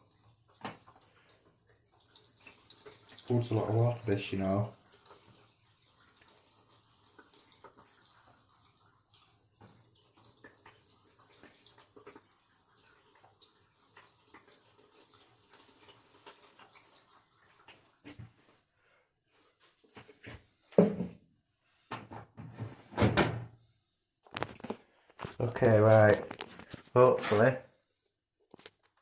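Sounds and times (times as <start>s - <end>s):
water trickling and dripping: 0.0s - 18.7s.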